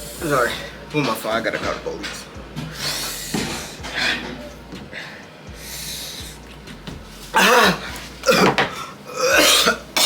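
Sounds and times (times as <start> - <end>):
person coughing and groaning: 7.3 - 10.0.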